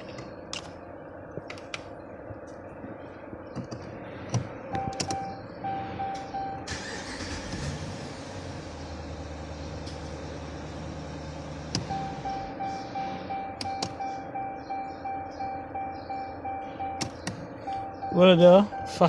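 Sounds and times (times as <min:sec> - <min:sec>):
car engine cranking and idling: 0:00.0 - 0:19.0
dashboard chime beeping: 0:04.7 - 0:06.7, 0:11.8 - 0:19.0.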